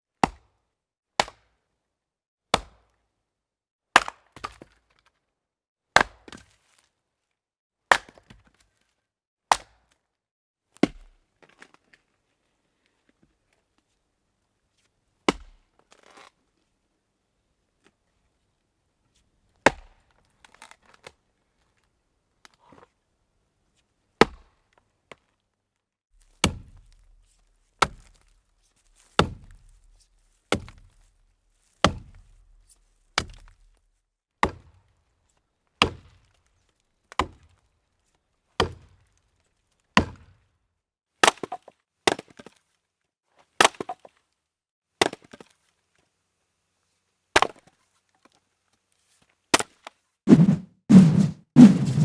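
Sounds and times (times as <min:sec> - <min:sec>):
axe chopping wood: 0:00.2 - 0:00.5, 0:01.2 - 0:01.4, 0:02.5 - 0:02.8, 0:06.0 - 0:06.4, 0:09.5 - 0:09.7, 0:15.3 - 0:15.5, 0:26.2 - 0:31.1, 0:31.8 - 0:32.4, 0:33.2 - 0:33.8, 0:34.4 - 0:34.8, 0:35.8 - 0:36.2, 0:37.1 - 0:37.5, 0:38.6 - 0:39.0, 0:40.0 - 0:40.3, 0:41.2 - 0:42.4, 0:43.6 - 0:44.1, 0:47.4 - 0:47.6.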